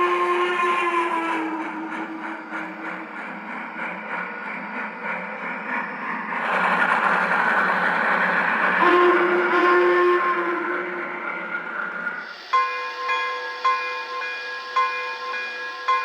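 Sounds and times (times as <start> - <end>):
steam whistle blowing: 0.0 - 2.6, 8.6 - 11.6, 12.2 - 16.0
model steam locomotive chuffing: 0.0 - 16.0.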